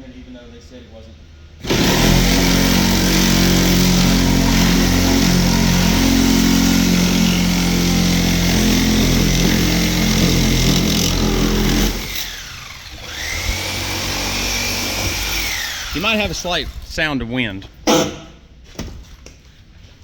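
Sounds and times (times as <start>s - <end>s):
reciprocating saw cutting sheet metal: 1.6s - 17.0s.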